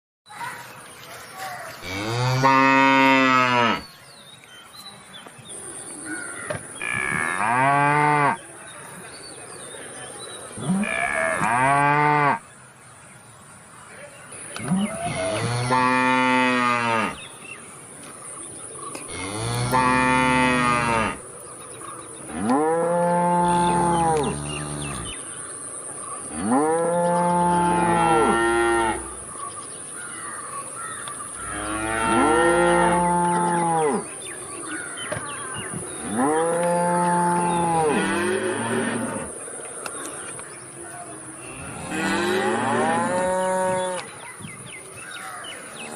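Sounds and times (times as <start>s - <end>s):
cow mooing: 1.8s - 3.8s, 14.7s - 17.2s, 19.1s - 21.2s, 22.3s - 25.1s, 26.4s - 29.2s, 31.4s - 34.0s, 36.0s - 39.3s, 41.6s - 44.1s.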